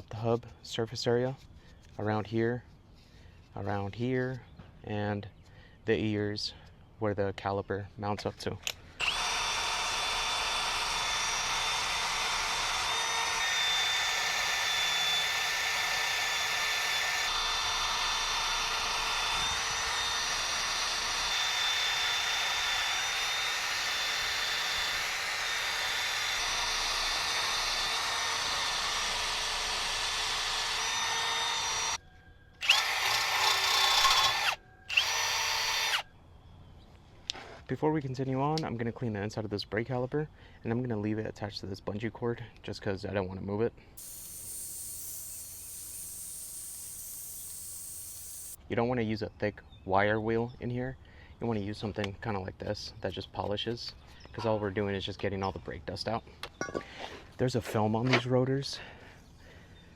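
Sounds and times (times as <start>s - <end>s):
power drill grinding rust: 9.0s - 32.0s, 32.6s - 36.0s, 44.0s - 48.6s.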